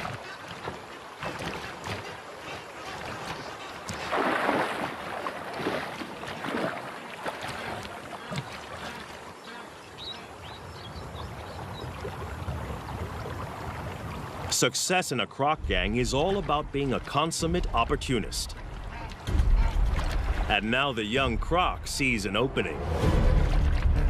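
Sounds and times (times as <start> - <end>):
water splashing and sloshing: 0.0 - 14.7, 15.4 - 24.0.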